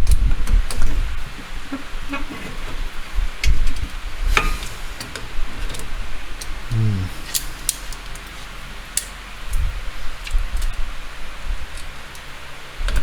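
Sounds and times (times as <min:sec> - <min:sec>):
man grunting: 0:06.7 - 0:07.7.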